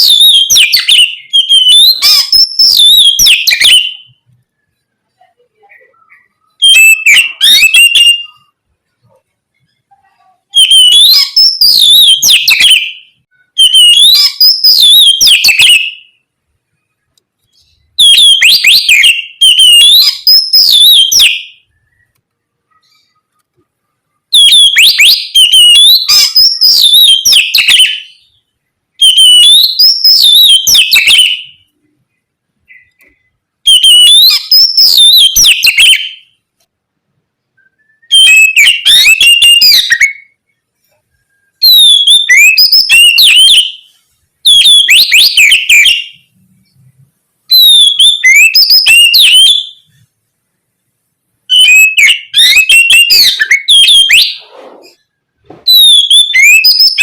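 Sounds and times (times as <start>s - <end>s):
bird singing whistled phrases: 0.0s - 4.2s, 5.4s - 8.5s, 10.5s - 16.2s, 17.5s - 22.1s, 24.3s - 28.4s, 29.0s - 31.7s, 32.7s - 36.4s, 37.6s - 40.4s, 41.3s - 46.3s, 47.5s - 49.9s, 51.5s - 55.0s, 55.7s - 57.0s.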